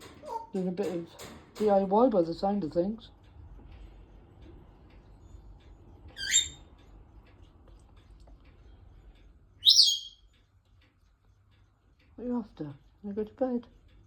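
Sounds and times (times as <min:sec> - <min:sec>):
parrots giving high-pitched calls: 0:06.2 - 0:06.6, 0:09.6 - 0:10.2.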